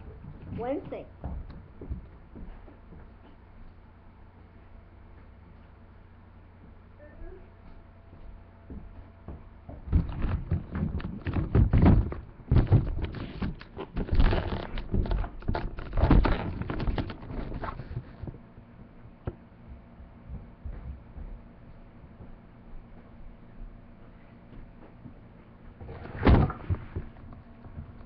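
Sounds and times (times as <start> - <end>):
knocks and thumps: 8.7 - 18.4.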